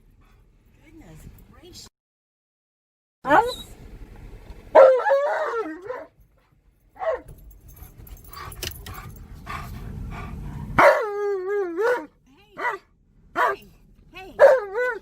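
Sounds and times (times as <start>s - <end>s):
dog yelp: 4.8s - 6.1s, 7.0s - 7.3s, 10.8s - 12.8s, 14.4s - 15.0s.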